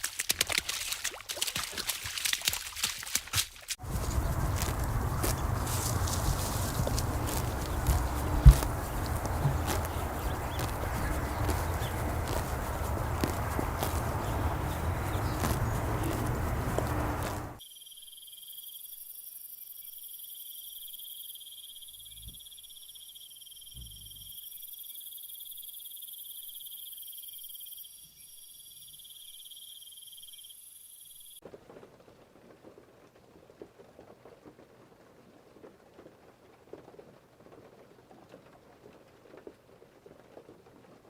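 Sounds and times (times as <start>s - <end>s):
crickets chirring: 3.8s - 31.4s.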